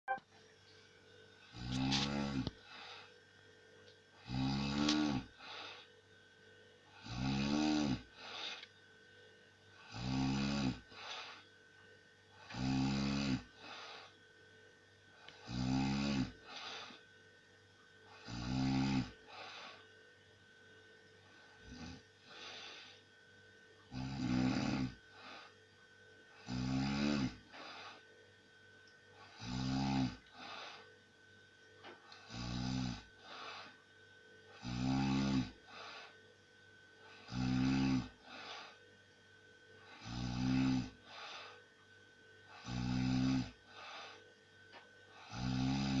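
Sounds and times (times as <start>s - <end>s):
man snoring: 1.5s - 3.0s, 4.2s - 5.8s, 6.9s - 8.6s, 9.7s - 11.4s, 12.4s - 14.1s, 15.3s - 17.0s, 18.1s - 19.8s, 21.6s - 22.9s, 23.9s - 25.5s, 26.3s - 28.0s, 29.2s - 30.8s, 32.1s - 33.8s, 34.5s - 36.1s, 37.0s - 38.8s, 39.8s - 41.6s, 42.5s - 44.2s, 45.1s - 46.0s
soft breath: 10.9s - 11.5s, 35.6s - 36.3s, 41.0s - 41.7s, 43.7s - 44.4s.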